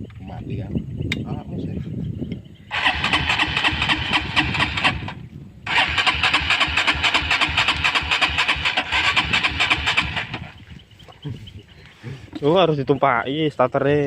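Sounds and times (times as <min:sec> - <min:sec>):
motorcycle engine cranking and sputtering: 0:02.7 - 0:10.6.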